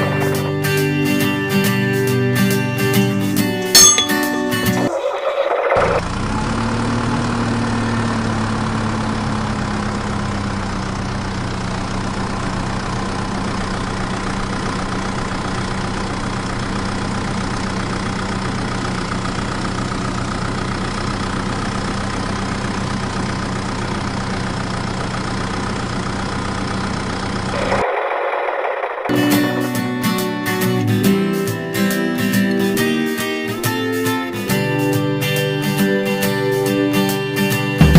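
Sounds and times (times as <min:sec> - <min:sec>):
tractor engine idling: 0:00.0 - 0:29.8.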